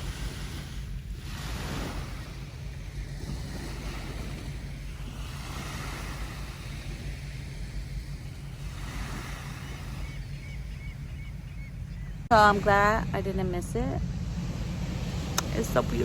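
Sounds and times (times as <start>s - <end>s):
surf washing onto beach: 0.0s - 11.5s
wind rumbling on microphone: 0.0s - 16.0s.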